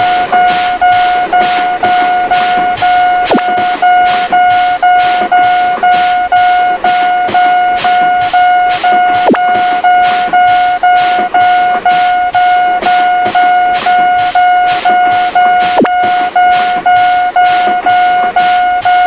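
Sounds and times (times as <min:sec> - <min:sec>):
railroad crossing bell ringing: 0:00.0 - 0:19.0.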